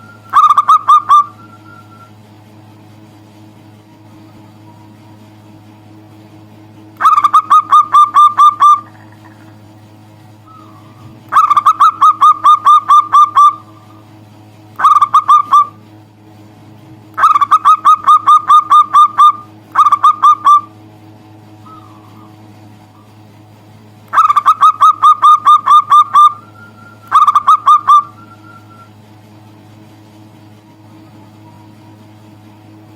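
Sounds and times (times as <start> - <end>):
dove calling in clipped notes: 0.0 - 2.2, 7.0 - 16.0, 17.1 - 23.4, 24.0 - 29.1.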